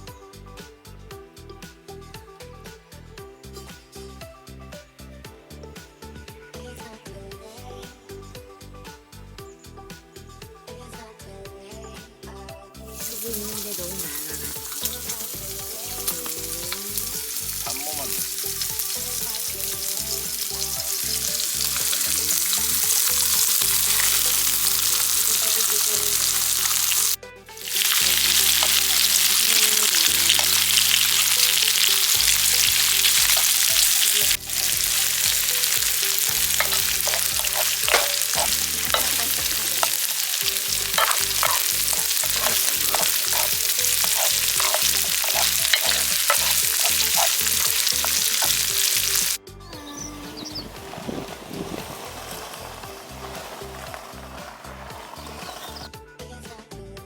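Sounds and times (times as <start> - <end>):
food sizzling in a pan: 12.9 - 49.4, 50.5 - 55.9.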